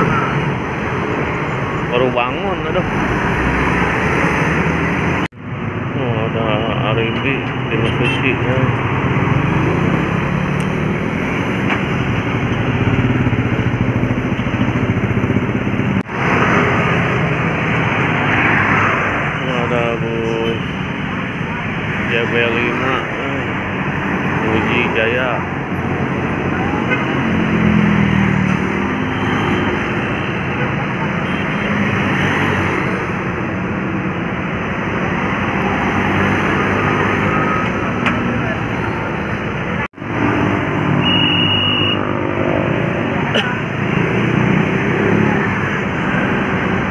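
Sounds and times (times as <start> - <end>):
bus diesel engine drone: 0.0 - 29.3
traffic noise: 0.0 - 46.9.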